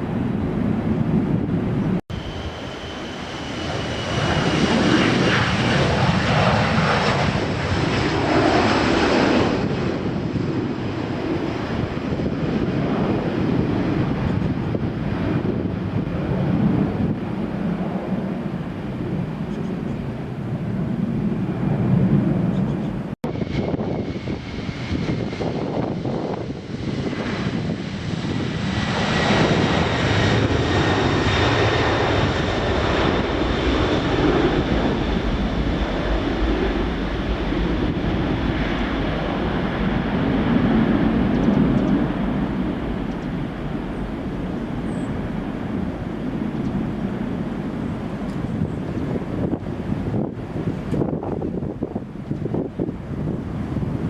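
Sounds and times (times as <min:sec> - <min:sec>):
jet engines roaring: 0:00.0 - 0:54.0.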